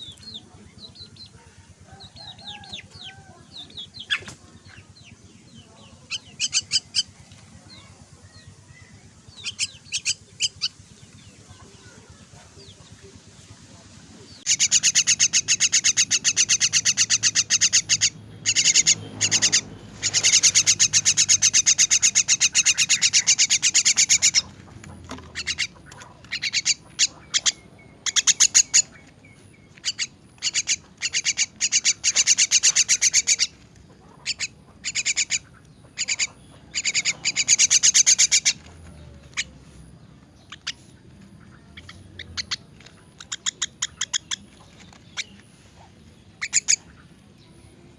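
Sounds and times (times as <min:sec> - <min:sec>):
young myna begging calls: 0:14.5 - 0:29.0, 0:29.8 - 0:38.7.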